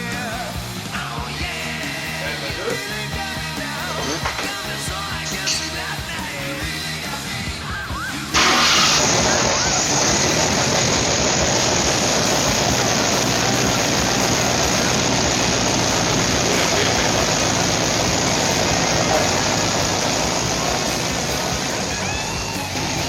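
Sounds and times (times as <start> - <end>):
car engine running: 1.5 - 23.0.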